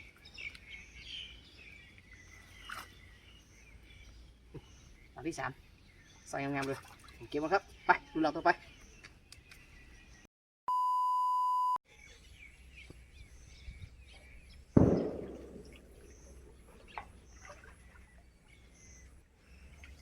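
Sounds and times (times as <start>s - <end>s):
birds chirping: 0.0s - 10.3s, 11.9s - 20.0s
electronic beep: 10.7s - 11.8s
thunderclap: 14.8s - 16.6s.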